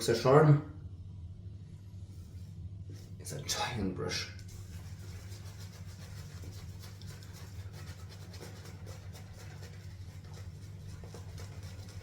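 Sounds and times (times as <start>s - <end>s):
steady low hum: 0.0s - 12.0s
shaving brush scrubbing lather: 4.4s - 12.0s.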